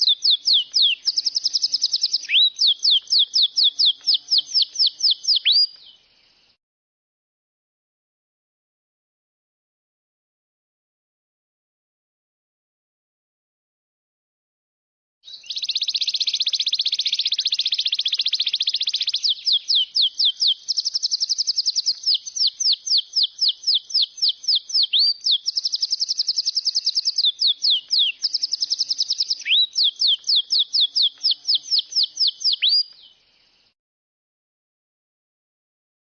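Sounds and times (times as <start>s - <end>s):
songbird singing: 0.0s - 6.6s, 15.3s - 33.8s.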